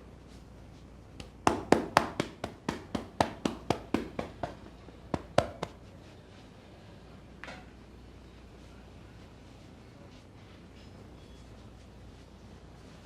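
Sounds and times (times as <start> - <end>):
hands slapping on head: 1.2 - 5.8.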